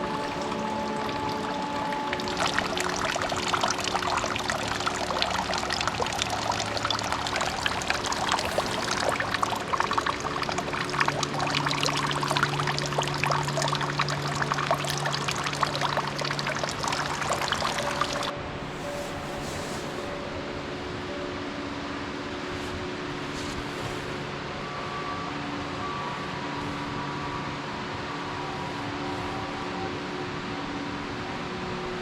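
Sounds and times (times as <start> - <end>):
waterfall pouring and splashing: 0.0 - 18.3.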